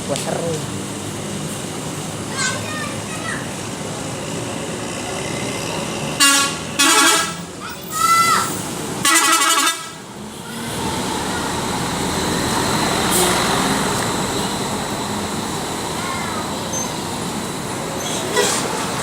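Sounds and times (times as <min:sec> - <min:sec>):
bus engine and tyre noise: 0:00.0 - 0:19.0
multi-tone bus horn: 0:06.1 - 0:07.5, 0:09.0 - 0:10.6, 0:18.1 - 0:18.9.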